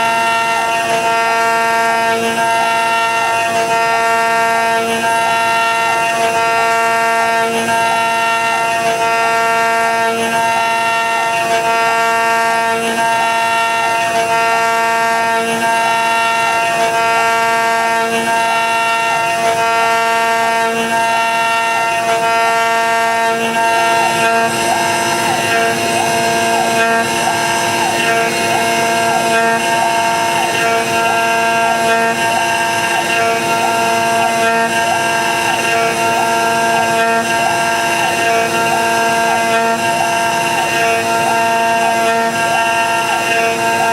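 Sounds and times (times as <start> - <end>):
router spindle whining: 0.0 - 43.9.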